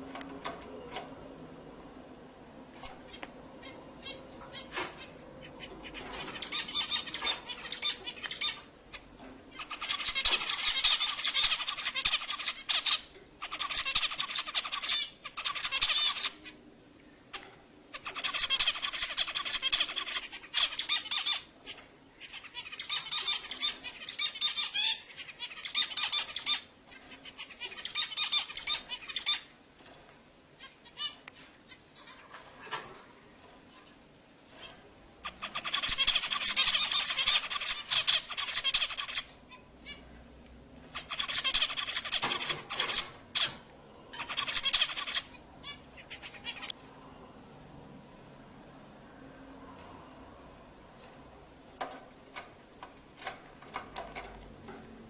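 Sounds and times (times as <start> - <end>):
finch song: 2.7 - 16.6, 17.3 - 29.5, 33.7 - 40.2, 40.9 - 47.2.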